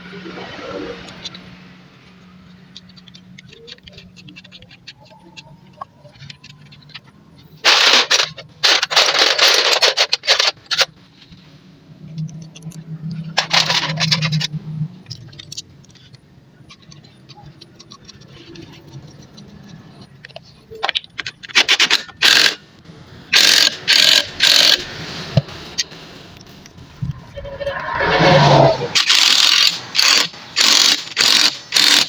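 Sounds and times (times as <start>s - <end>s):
metal scraping: 24.2s - 29.8s.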